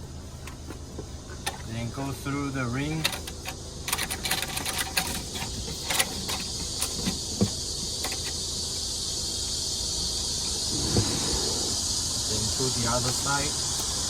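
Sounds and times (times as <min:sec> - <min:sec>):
steady hiss: 0:05.6 - 0:14.0.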